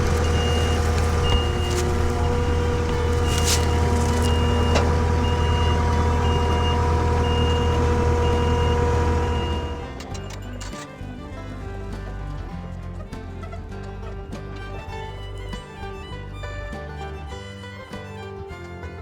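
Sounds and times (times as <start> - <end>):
reversing alarm beeping: 0.0 - 10.8
metallic clanks: 0.0 - 14.8
engine running: 0.0 - 19.0.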